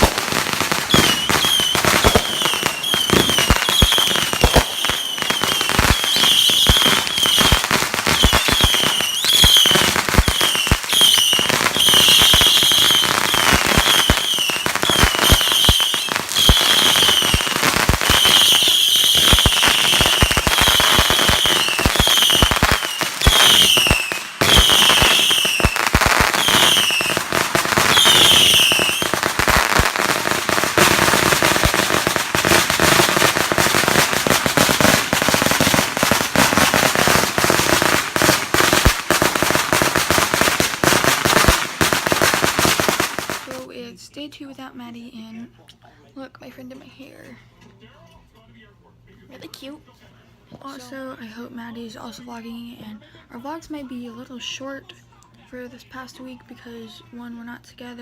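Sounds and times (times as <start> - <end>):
falling firework whistles: 0.0 - 43.2
fireworks crackling and popping: 0.0 - 43.7.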